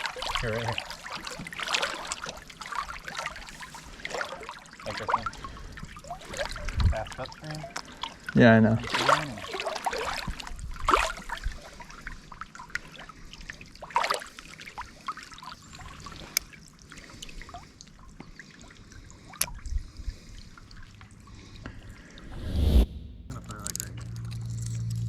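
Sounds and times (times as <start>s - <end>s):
river water trickling over stones: 0.0s - 7.9s.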